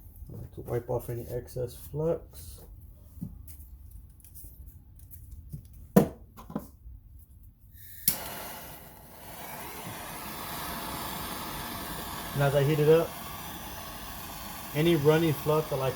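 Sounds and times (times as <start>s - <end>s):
torch flame hissing: 7.8s - 15.9s
torch lighting click: 8.0s - 15.9s.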